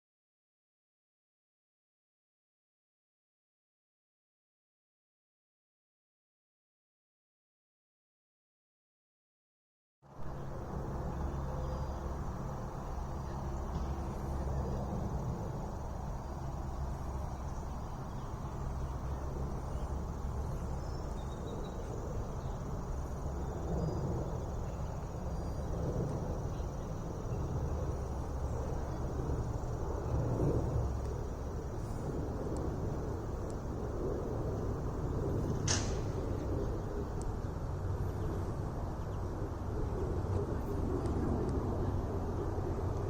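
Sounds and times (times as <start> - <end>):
distant traffic rumble: 10.1 - 43.0
crickets droning: 10.3 - 37.2.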